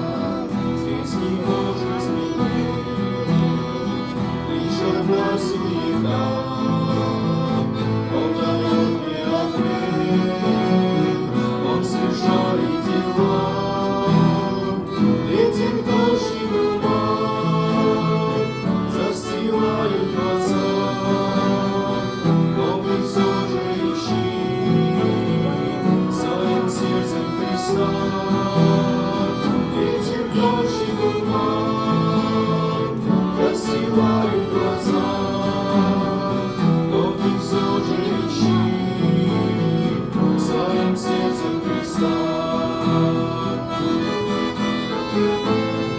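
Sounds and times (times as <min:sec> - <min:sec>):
christian song with instruments: 0:00.0 - 0:45.9.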